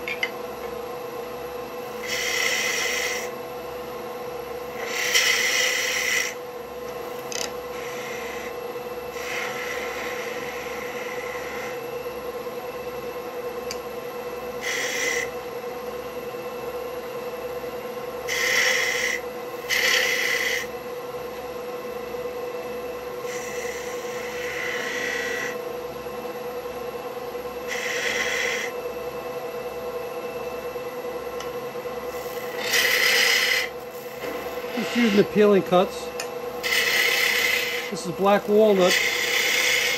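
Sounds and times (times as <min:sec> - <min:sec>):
wood lathe humming: 0:01.6 - 0:12.2, 0:13.2 - 0:15.6, 0:18.0 - 0:20.8, 0:23.0 - 0:26.8, 0:27.4 - 0:28.8, 0:31.2 - 0:39.9
turning tool hissing cuts: 0:01.9 - 0:03.4, 0:04.7 - 0:06.4, 0:07.1 - 0:11.9, 0:14.5 - 0:15.3, 0:18.3 - 0:20.7, 0:23.2 - 0:25.6, 0:27.6 - 0:28.8, 0:32.1 - 0:39.9.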